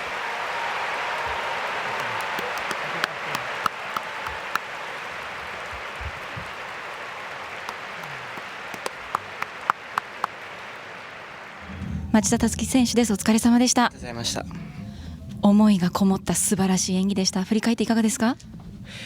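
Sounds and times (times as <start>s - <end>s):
crowd applauding: 0.0s - 12.3s.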